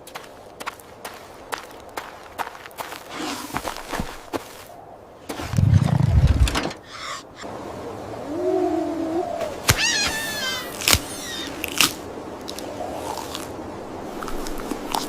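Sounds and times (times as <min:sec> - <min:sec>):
low wavering animal cry: 0:08.2 - 0:11.5
high squealing animal call: 0:08.4 - 0:11.7.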